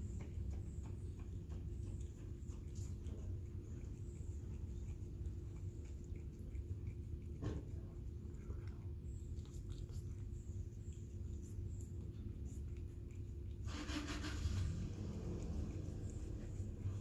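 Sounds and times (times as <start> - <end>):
cat chewing and licking food: 0.0 - 17.0
low steady hum: 0.0 - 17.0
loud noisy burst: 13.7 - 15.9.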